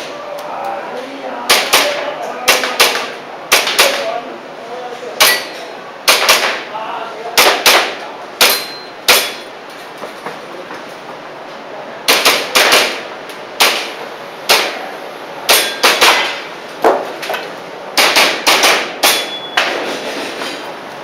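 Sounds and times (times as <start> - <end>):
airsoft pistol shots: 6.1 - 6.6, 7.4 - 9.5, 12.1 - 13.0, 13.6 - 14.8, 15.5 - 16.4, 18.0 - 19.7.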